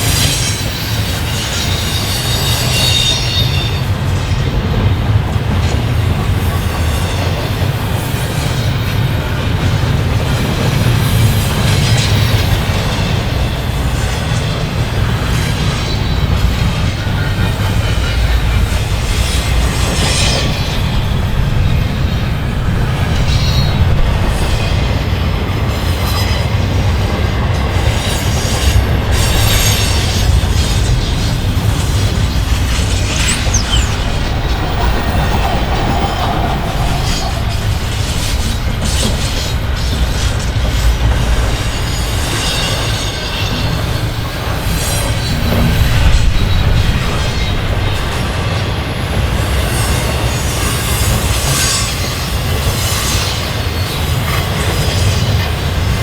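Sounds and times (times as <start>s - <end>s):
train wheels rumbling on rail: 0.0s - 56.0s
high wheel squeals: 28.2s - 40.6s.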